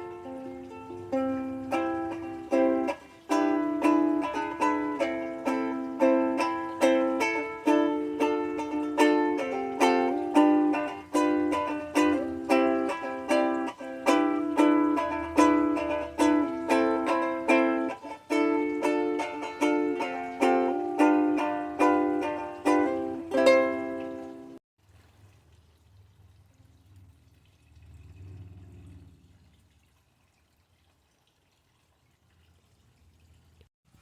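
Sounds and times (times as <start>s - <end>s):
ukulele picking and strumming: 0.0s - 24.6s.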